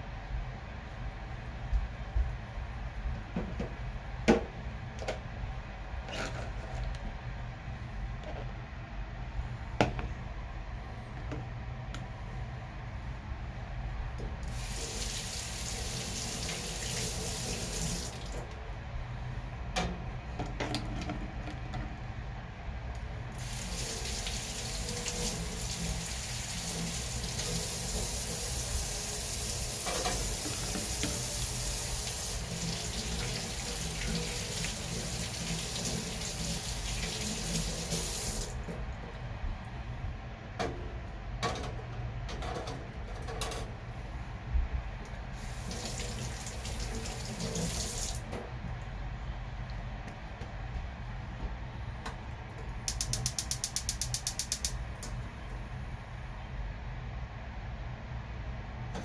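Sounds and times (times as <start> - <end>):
tap running into a sink: 23.4 - 38.8.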